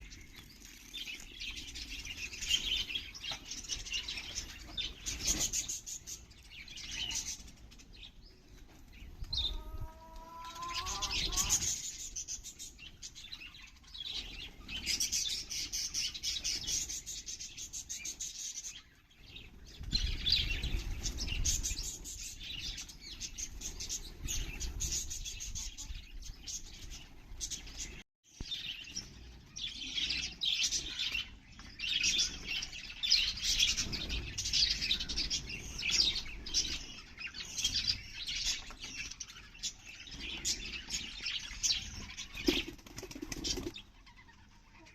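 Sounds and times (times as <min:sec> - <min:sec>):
budgerigars chirping and chattering: 0:08.9 - 0:44.9
wing flapping: 0:42.4 - 0:43.8.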